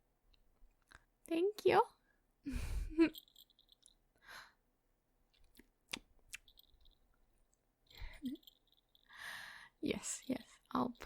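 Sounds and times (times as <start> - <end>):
soft breath: 9.0 - 9.8.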